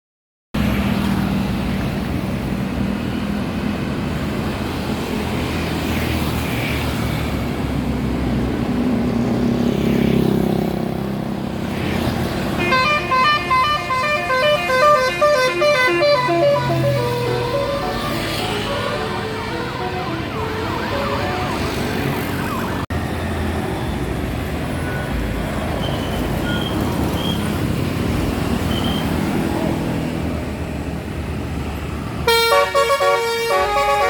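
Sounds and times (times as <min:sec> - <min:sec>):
engine and road noise: 0:00.5 - 0:34.0
multi-tone musical horn melody: 0:12.6 - 0:22.1, 0:32.3 - 0:34.0.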